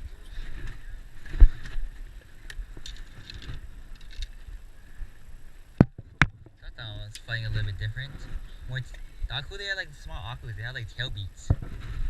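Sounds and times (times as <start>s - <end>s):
wind and water rumble: 0.0s - 12.0s
small clicks and knocks: 2.4s - 4.4s.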